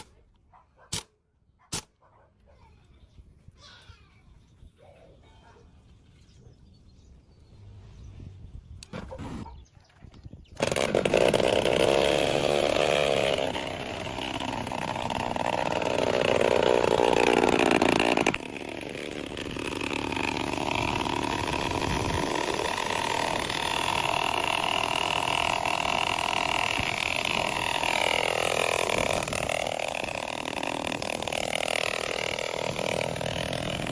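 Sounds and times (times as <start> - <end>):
small motorcycle engine revving: 10.4 - 33.9.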